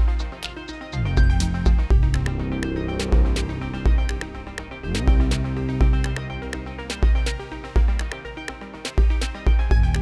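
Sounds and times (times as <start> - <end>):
deep bass kicks: 1.1 - 7.3
sustained synth tones: 1.9 - 7.2.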